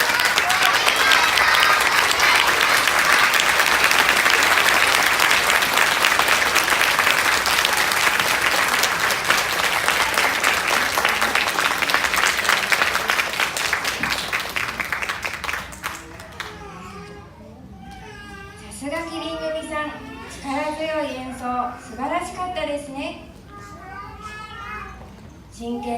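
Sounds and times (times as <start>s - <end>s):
audience applauding: 0.0s - 16.7s.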